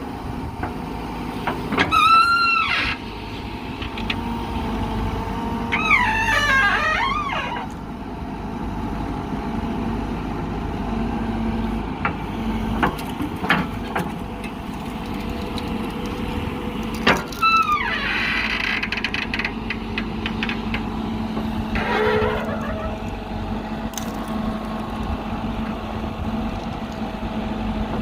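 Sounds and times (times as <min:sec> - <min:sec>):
diesel engine running: 0:00.0 - 0:28.0
short falling squeal: 0:01.9 - 0:03.0, 0:05.7 - 0:07.7, 0:21.7 - 0:23.1.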